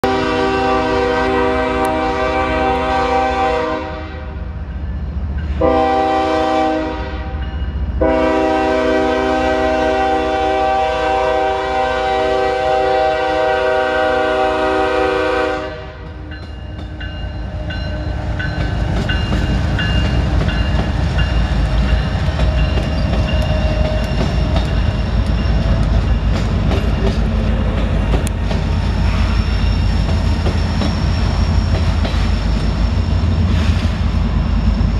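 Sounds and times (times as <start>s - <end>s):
locomotive air horn blasts: 0.0s - 4.4s, 5.6s - 16.3s
train rumbling past: 0.0s - 34.9s
wheels clacking on rails: 16.0s - 34.9s.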